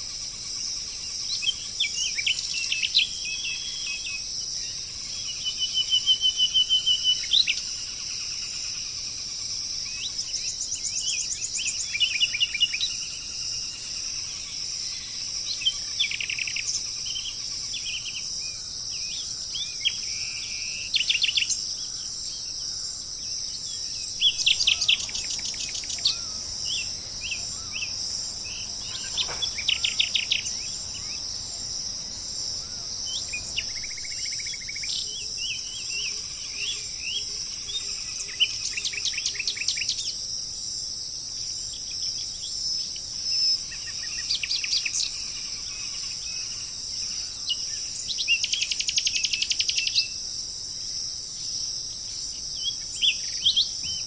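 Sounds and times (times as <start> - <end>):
songbirds trilling: 24.2 - 34.2
insect chorus: 24.2 - 34.3.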